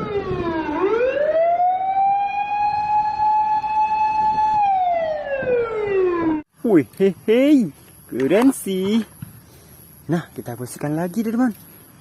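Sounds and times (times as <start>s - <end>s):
fire engine siren wailing: 0.0s - 6.5s.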